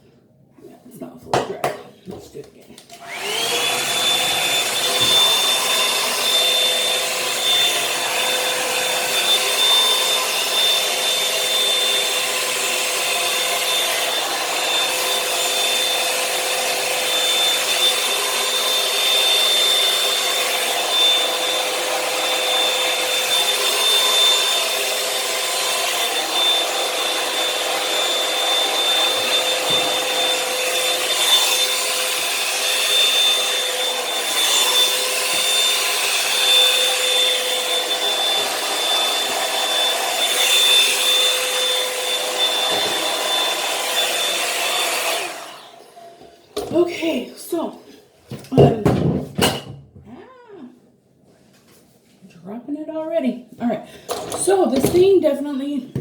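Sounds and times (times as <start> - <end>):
hair dryer brush fan whine: 2.9 - 47.6.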